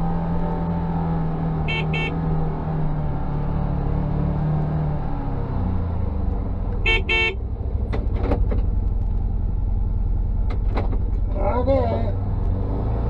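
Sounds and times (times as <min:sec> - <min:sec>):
utility vehicle engine rumbling: 0:00.0 - 0:13.0
horn toots: 0:01.7 - 0:02.2, 0:06.8 - 0:07.4.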